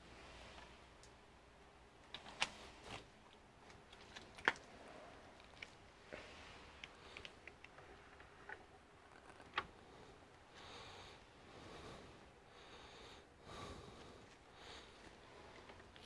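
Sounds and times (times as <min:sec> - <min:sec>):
person sniffing and breathing: 0:09.9 - 0:15.7.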